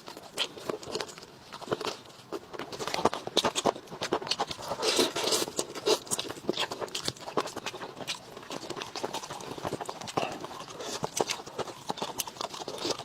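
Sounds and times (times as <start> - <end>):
food being chewed and crunched: 0.0 - 13.0.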